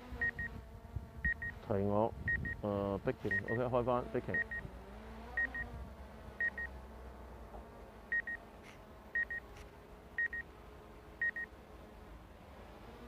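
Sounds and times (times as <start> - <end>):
short high double beeps: 3.3 - 3.6, 4.4 - 4.6.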